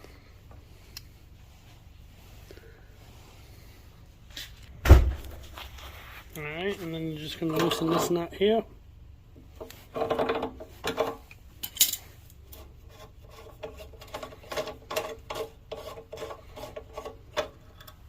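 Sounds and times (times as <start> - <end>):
wrench metallic clicks and scrapes: 7.2 - 8.3, 9.5 - 18.0.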